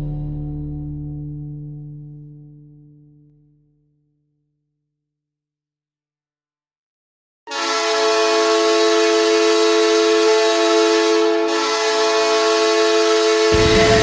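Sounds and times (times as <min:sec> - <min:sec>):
goal horn blast: 0:07.5 - 0:14.0
music with heavy low beat: 0:13.5 - 0:14.0.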